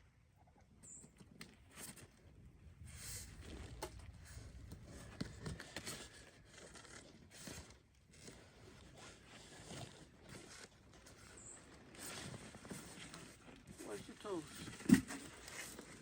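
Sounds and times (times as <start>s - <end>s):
cardboard box being opened: 3.3s - 13.7s.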